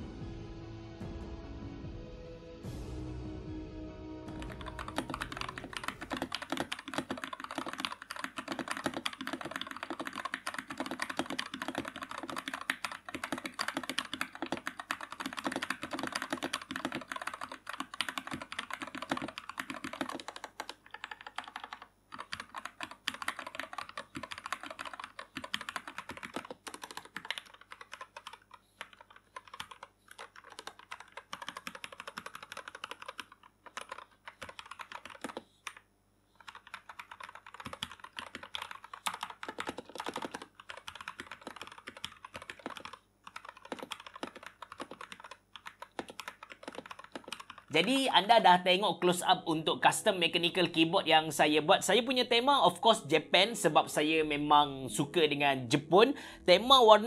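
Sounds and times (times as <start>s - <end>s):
typing on mechanical keyboard: 4.3s - 35.8s, 36.4s - 48.1s.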